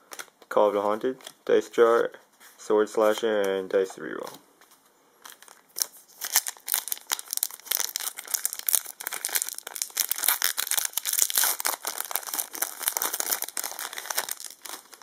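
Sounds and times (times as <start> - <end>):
foil wrapper crinkling and tearing: 5.2 - 15.0.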